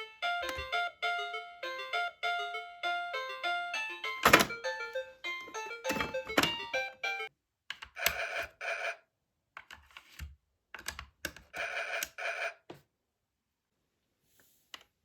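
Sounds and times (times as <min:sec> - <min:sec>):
toy electronic tune: 0:00.0 - 0:07.3.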